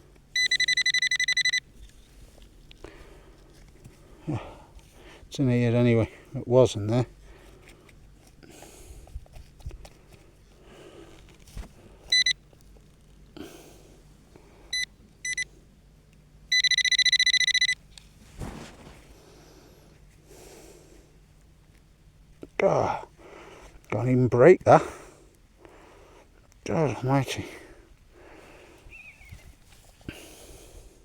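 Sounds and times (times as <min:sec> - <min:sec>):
pinpointer beeps: 0:00.4 - 0:01.6, 0:12.1 - 0:12.4, 0:14.7 - 0:15.5, 0:16.5 - 0:17.8
soil rustling and knocks: 0:18.2 - 0:19.1.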